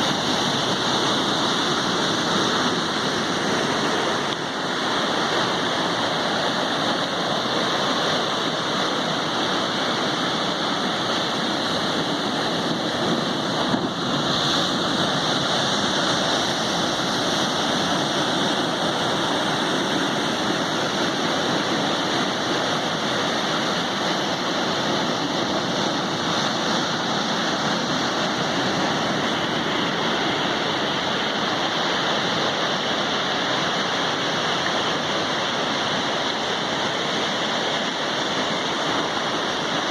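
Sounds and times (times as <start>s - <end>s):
sea waves breaking: 0.0s - 39.9s.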